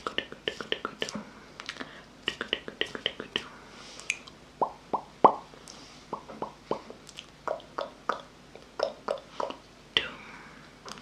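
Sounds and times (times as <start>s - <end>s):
tongue clicks: 4.1s - 5.4s, 6.1s - 9.6s.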